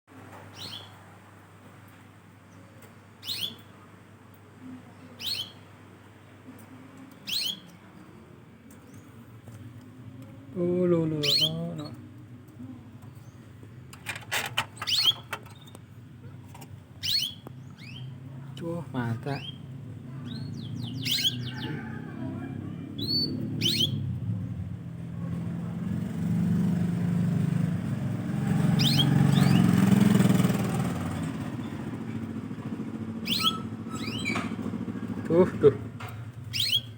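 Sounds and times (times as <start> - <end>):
small bird chirping: 0.5 - 1.0, 3.2 - 3.7, 5.1 - 5.6, 7.2 - 8.2, 11.0 - 12.1, 14.7 - 16.0, 16.6 - 24.7, 28.5 - 35.8, 36.4 - 36.9
canary cheeping: 3.2 - 3.7, 5.2 - 5.6, 7.2 - 7.8, 11.2 - 12.0, 14.8 - 15.7, 17.0 - 18.2, 19.4 - 24.1, 28.5 - 30.1, 33.2 - 35.2, 36.5 - 36.9
vehicle engine humming: 12.5 - 36.9.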